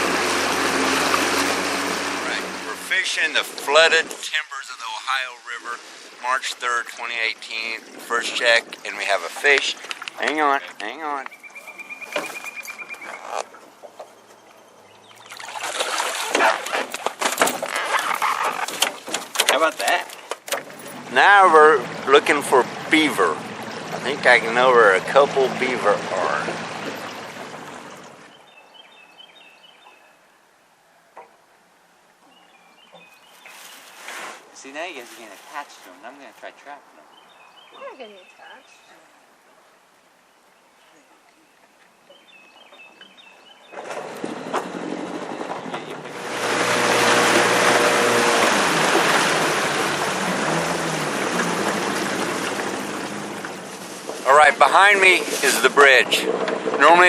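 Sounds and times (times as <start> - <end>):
outboard motor running: 0.0 - 4.2, 12.1 - 28.4, 43.7 - 57.0
rush of water and wind: 0.0 - 13.8, 15.2 - 28.4, 43.7 - 57.0
songbird singing: 2.2 - 15.8, 19.6 - 31.4, 32.2 - 34.7, 35.8 - 44.1, 44.9 - 47.1.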